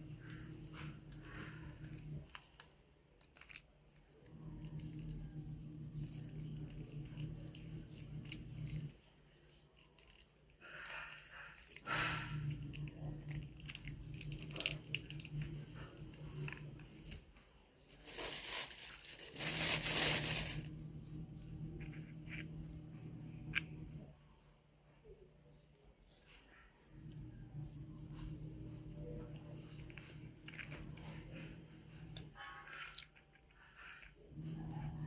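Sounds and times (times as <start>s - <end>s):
low steady hum: 0.0s - 35.0s
food packaging crinkling and tearing: 17.9s - 20.8s.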